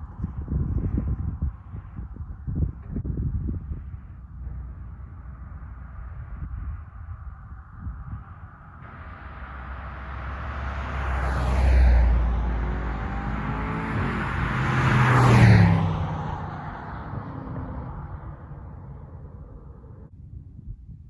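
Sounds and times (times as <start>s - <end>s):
car passing by: 8.8s - 20.1s
engine revving on throttle: 8.8s - 20.1s.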